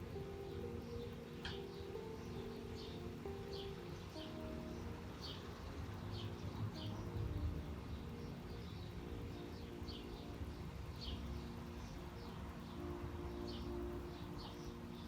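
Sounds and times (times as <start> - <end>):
city traffic rumble: 0.0 - 15.0
small birds chirping: 0.0 - 15.0.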